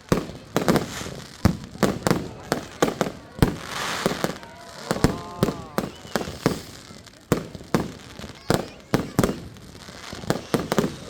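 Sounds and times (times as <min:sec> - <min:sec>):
fireworks bangs: 0:00.0 - 0:11.0.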